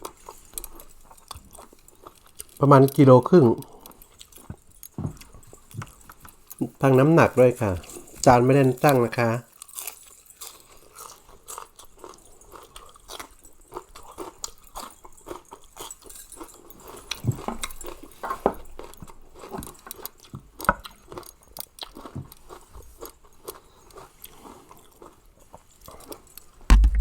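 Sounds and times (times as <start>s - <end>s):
person chewing and biting food: 9.6s - 18.0s, 18.7s - 27.0s.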